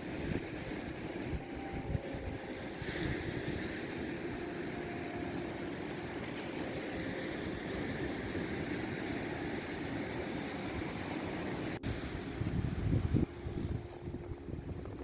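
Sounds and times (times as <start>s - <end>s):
low even drone: 0.0s - 15.0s
sea waves: 0.0s - 15.0s
wind: 0.0s - 15.0s.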